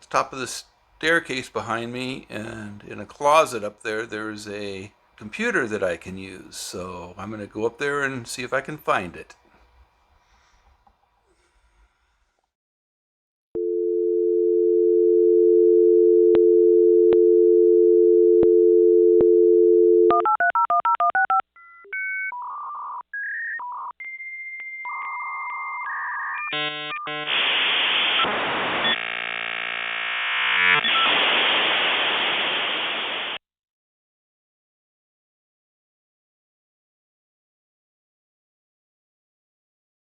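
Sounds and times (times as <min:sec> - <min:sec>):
telephone dial tone: 0:13.6 - 0:21.4
loud static hiss: 0:26.7 - 0:33.4.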